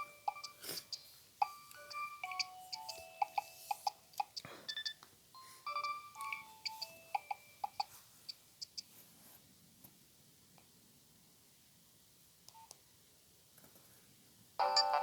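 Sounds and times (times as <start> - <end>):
mobile phone ringtone melody: 0.0 - 8.0, 14.6 - 15.0.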